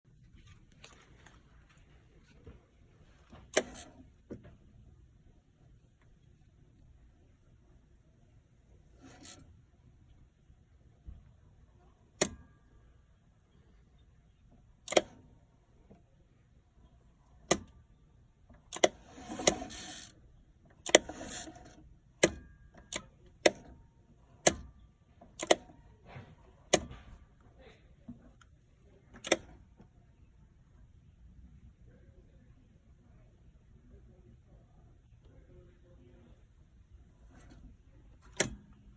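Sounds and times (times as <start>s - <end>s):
starter circuit clicking: 14.9s - 15.2s, 20.7s - 23.7s, 25.3s - 25.8s, 29.2s - 29.6s
starter-generator trying to crank: 18.7s - 20.1s, 20.8s - 21.8s.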